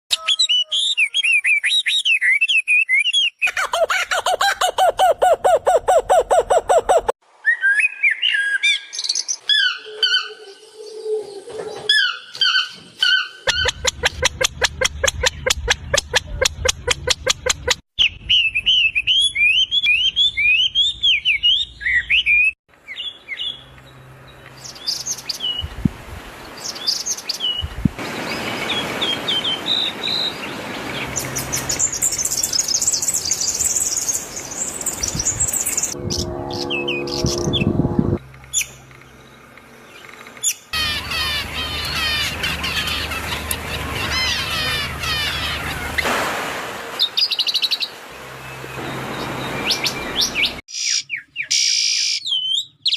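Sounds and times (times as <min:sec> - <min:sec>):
harsh bird call: 0:40.4 - 0:46.1.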